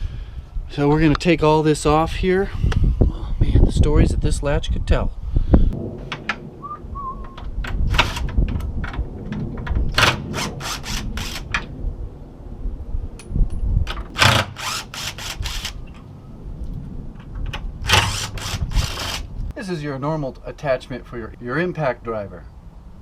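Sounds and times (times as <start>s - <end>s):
impact driver hammering: 14.1s - 15.4s.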